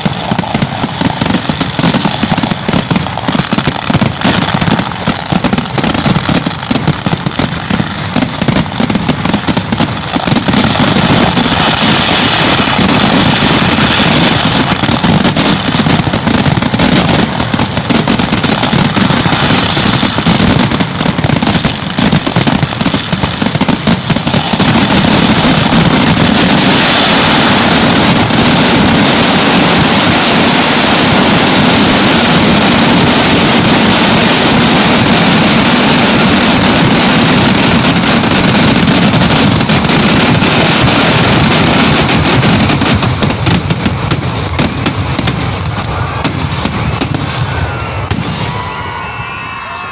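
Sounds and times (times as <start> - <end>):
firecracker blasts: 0.0 - 49.9.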